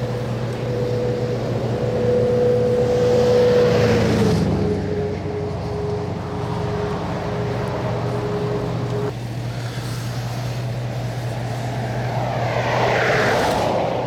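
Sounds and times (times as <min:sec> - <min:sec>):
vehicle driving past: 0:00.0 - 0:09.1, 0:11.0 - 0:14.0
whine dropping in pitch: 0:00.0 - 0:09.1.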